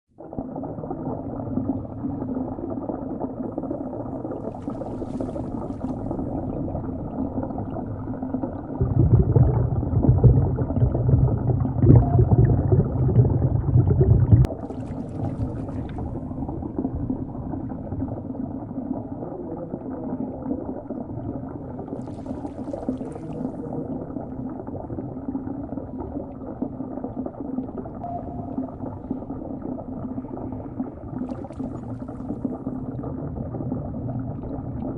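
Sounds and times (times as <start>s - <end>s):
water gurgling and bubbling: 0.2s - 34.9s
low rumble: 5.4s - 21.8s.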